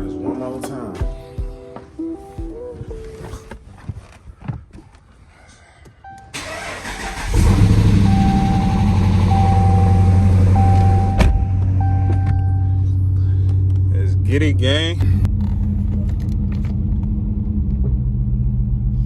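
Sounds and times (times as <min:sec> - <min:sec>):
car engine cranking and idling: 0:06.2 - 0:19.0
electronic warning chime: 0:07.9 - 0:12.8.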